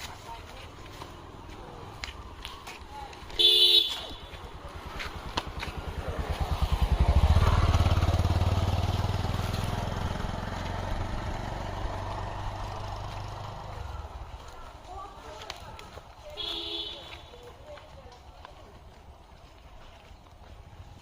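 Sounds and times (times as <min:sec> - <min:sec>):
motorcycle passing by: 0:03.8 - 0:17.6.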